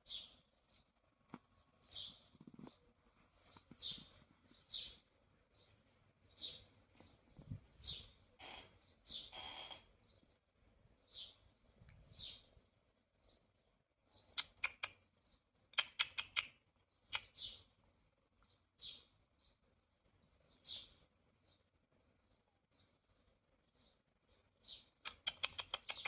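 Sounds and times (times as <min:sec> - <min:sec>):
faint bird chirps: 0:00.0 - 0:26.0
sharp clicks: 0:14.3 - 0:15.0, 0:15.7 - 0:17.4, 0:25.0 - 0:26.0.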